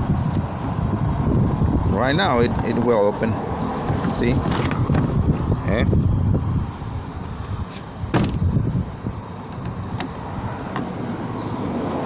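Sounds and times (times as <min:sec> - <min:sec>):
car door latch clicking: 0:07.8 - 0:08.5.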